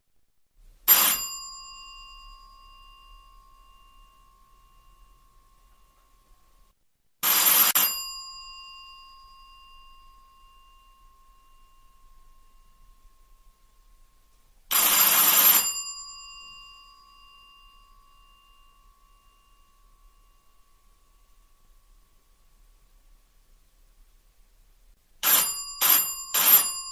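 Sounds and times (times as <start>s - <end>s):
electric doorbell ringing: 0.9s - 22.3s, 25.2s - 26.9s.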